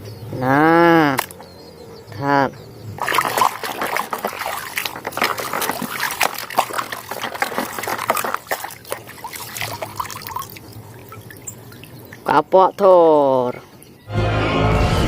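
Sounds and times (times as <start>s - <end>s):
water trickling and splashing: 2.8s - 14.0s.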